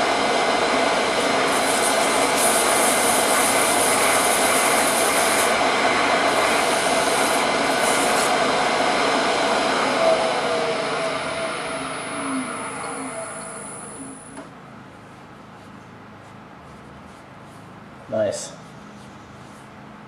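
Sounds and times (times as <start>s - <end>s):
lathe motor hum: 0.0s - 14.5s
gouge cutting wood hiss: 1.3s - 5.6s, 6.3s - 8.4s.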